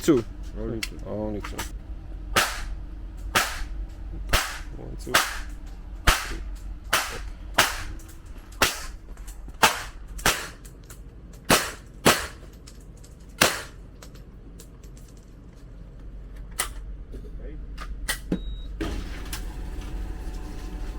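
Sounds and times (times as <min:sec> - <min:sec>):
faint gunshot cracks: 0:02.4 - 0:02.7, 0:03.4 - 0:03.7, 0:04.3 - 0:05.5, 0:06.1 - 0:07.9, 0:13.4 - 0:13.8
gunshots: 0:02.4 - 0:03.7, 0:04.3 - 0:08.0, 0:08.6 - 0:09.0, 0:09.6 - 0:10.6, 0:11.5 - 0:12.4, 0:13.4 - 0:13.8.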